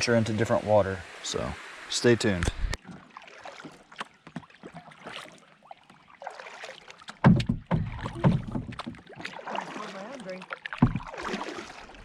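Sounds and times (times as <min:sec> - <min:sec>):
paddle strokes splashing: 0:02.4 - 0:12.0.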